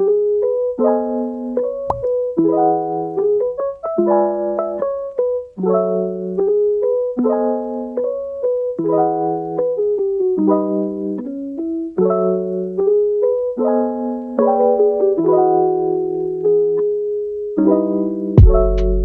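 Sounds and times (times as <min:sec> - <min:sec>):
piano playing repeating chords: 0:00.0 - 0:19.0
brief click: 0:01.9 - 0:02.1.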